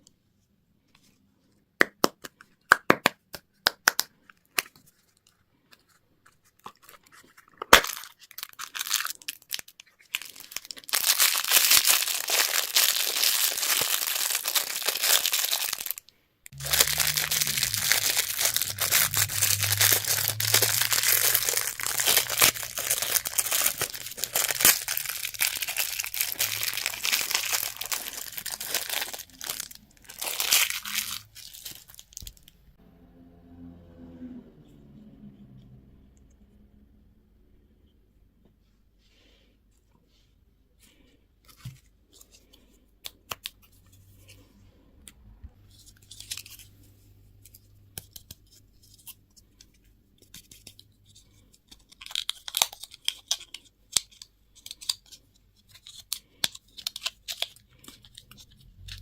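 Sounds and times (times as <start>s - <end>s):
plastic wrapping crinkling and tearing: 6.4s - 32.6s, 45.7s - 46.7s, 50.2s - 59.0s
low hum: 16.6s - 27.0s, 32.4s - 38.0s.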